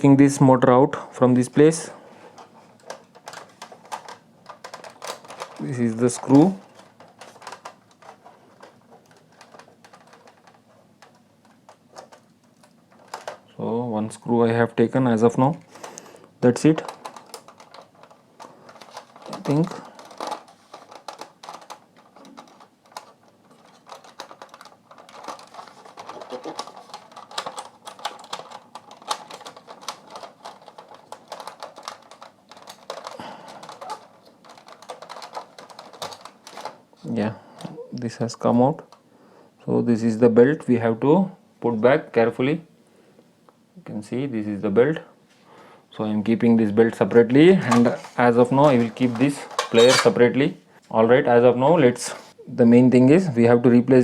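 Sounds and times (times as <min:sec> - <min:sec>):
small parts clicking and tapping: 0:02.4 - 0:13.5, 0:15.6 - 0:36.8, 0:47.7 - 0:50.2.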